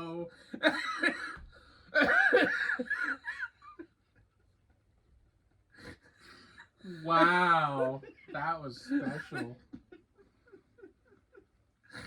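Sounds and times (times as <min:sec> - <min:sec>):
men laughing: 0:02.0 - 0:03.9, 0:06.9 - 0:12.0.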